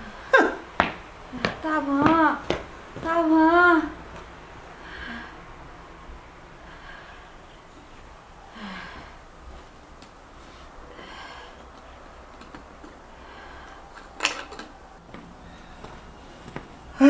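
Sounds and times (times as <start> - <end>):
person breathing softly: 4.7 - 5.8, 6.6 - 9.7, 10.3 - 12.3, 13.0 - 14.2.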